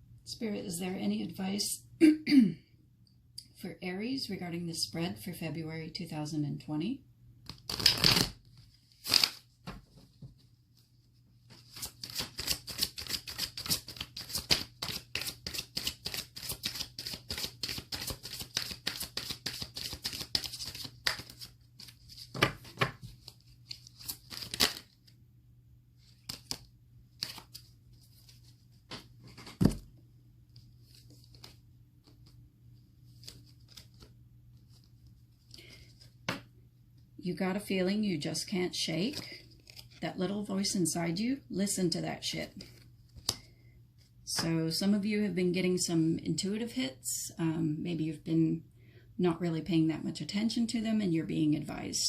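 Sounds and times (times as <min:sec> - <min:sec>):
cards being shuffled by hand: 0:07.4 - 0:25.1, 0:26.0 - 0:29.8, 0:30.5 - 0:32.4, 0:33.0 - 0:36.5, 0:39.0 - 0:40.0.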